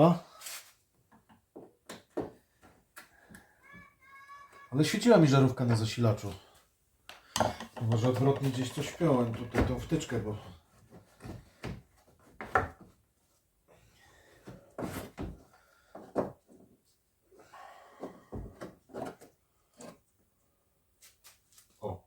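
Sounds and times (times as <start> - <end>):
plastic parts clicking and knocking: 7.1 - 9.7.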